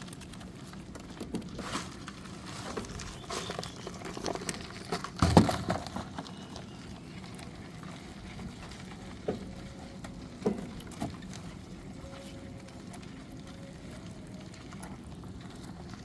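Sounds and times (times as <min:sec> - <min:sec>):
knocks and clatter of handling: 0:00.0 - 0:06.4.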